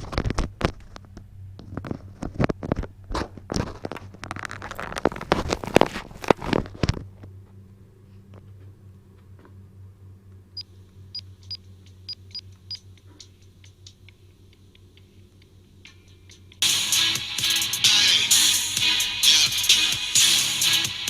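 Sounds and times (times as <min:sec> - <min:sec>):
microphone scraping and rustling: 0:00.0 - 0:09.5
faint low hum: 0:00.0 - 0:16.6.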